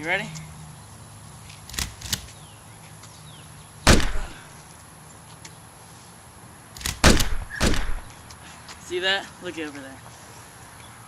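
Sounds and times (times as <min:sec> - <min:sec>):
gunshot sound effects: 0:03.9 - 0:04.4, 0:07.0 - 0:08.1.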